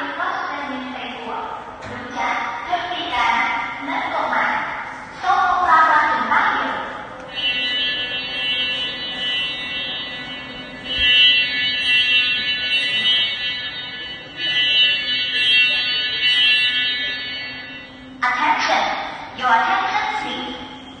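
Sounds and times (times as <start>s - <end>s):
fire alarm buzzing: 6.2s - 21.0s.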